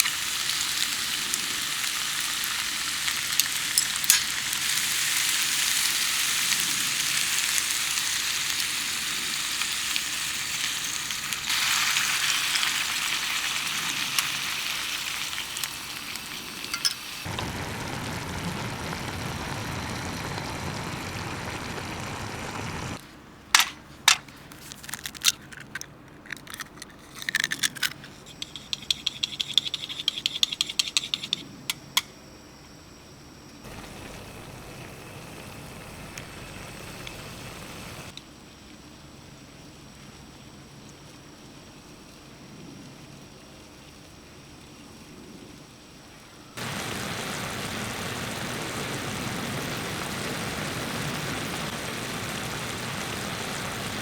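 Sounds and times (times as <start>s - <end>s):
food sizzling in a pan: 0.0s - 23.0s, 33.7s - 38.2s, 46.6s - 54.0s
sharp clicks and clinks: 3.4s - 4.5s, 16.6s - 17.2s.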